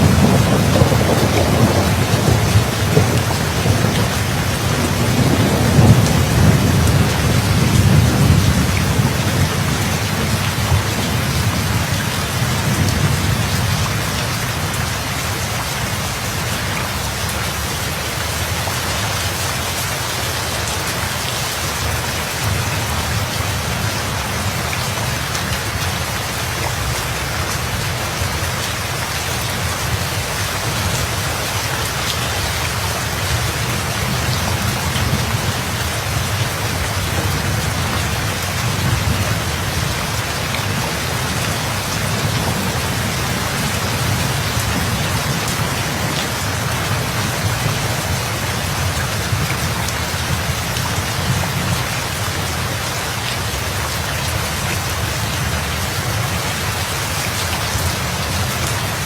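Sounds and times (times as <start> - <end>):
low roll of thunder: 0.0 - 14.3
heavy rain hissing: 0.0 - 59.0.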